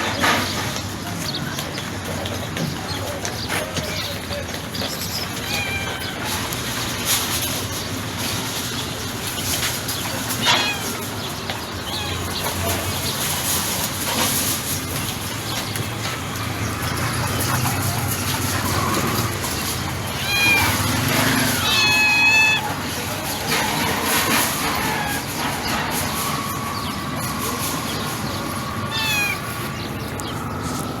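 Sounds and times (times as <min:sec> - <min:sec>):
steady background noise: 0:00.0 - 0:31.0
cat mewing: 0:05.4 - 0:06.6, 0:10.3 - 0:11.2, 0:11.8 - 0:12.6, 0:20.0 - 0:22.9, 0:24.8 - 0:25.4, 0:28.8 - 0:29.8.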